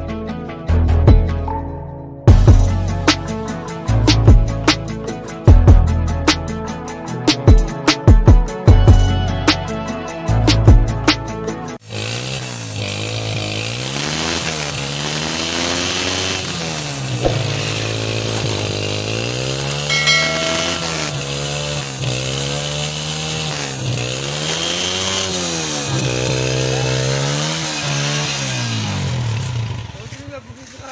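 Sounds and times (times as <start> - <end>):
motorcycle engine revving: 11.9 - 30.9.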